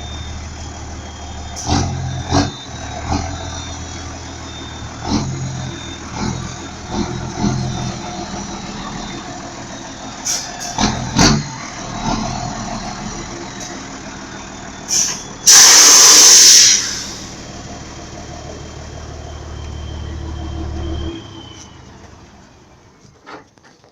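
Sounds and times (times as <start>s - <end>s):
truck engine idling: 0.0s - 23.3s
loud air hiss: 14.9s - 17.4s.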